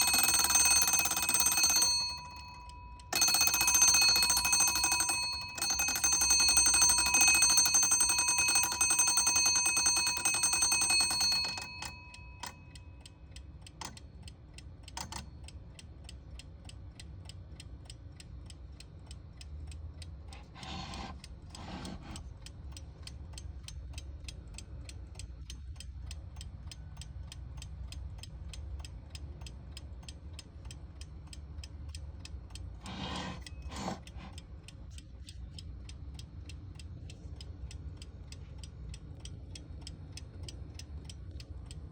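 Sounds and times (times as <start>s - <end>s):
clock ticking quickly: 0.0s - 12.8s
alarm clock bell ringing: 0.0s - 13.0s.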